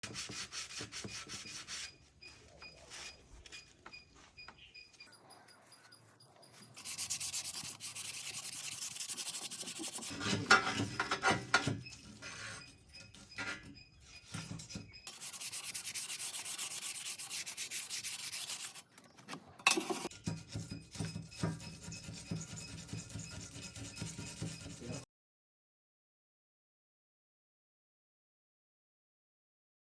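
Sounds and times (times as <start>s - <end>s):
scraping rust off steel: 6.4s - 25.0s.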